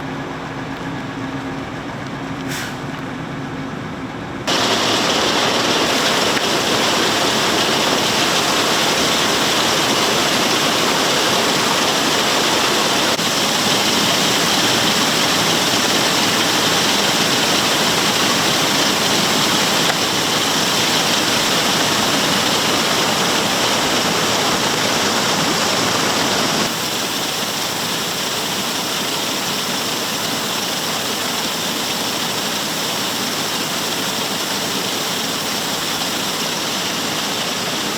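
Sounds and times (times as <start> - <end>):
augers running: 4.5 - 26.8
grain pouring into pit: 4.5 - 37.9.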